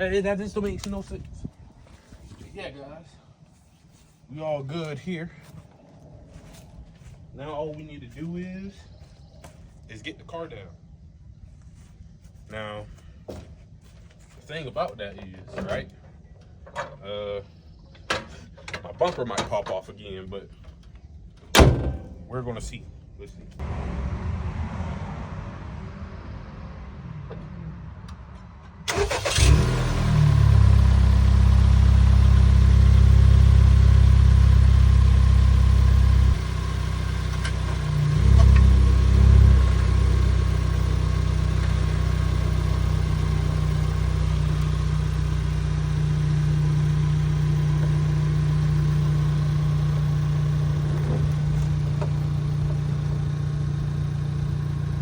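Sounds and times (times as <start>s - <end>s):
car engine revving: 23.6s - 55.0s
car engine starting and idling: 23.6s - 55.0s.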